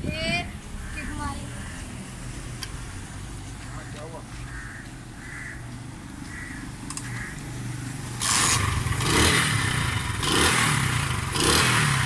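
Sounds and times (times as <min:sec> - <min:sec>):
motorcycle engine running: 0:07.2 - 0:12.0.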